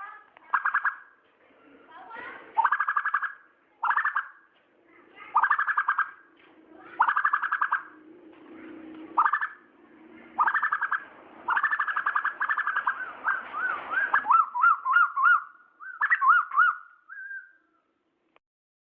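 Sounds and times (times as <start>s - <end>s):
bird calling sharp repeated notes: 0.5s - 1.2s, 2.6s - 4.5s, 5.3s - 6.3s, 7.0s - 8.0s, 9.2s - 9.7s, 10.4s - 17.8s.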